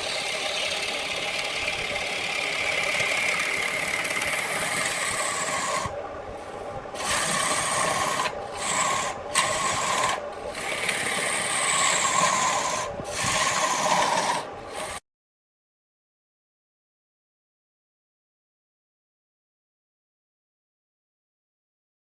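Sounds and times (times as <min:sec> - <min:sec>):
lathe tool scraping spinning wood: 0:00.0 - 0:15.0.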